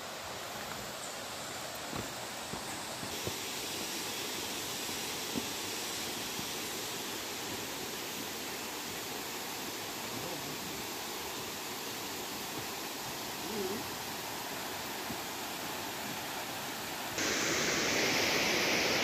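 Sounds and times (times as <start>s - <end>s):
waterfall rushing: 2.1s - 19.0s.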